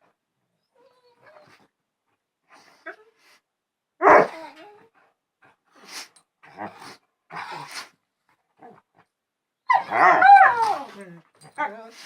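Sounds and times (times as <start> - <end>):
dog whining: 9.7 - 11.0.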